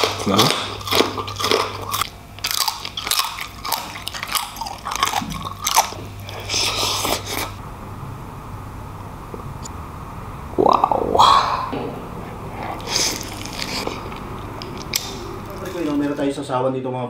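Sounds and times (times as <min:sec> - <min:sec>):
person chewing crispy food: 0:00.0 - 0:07.6, 0:12.6 - 0:16.3.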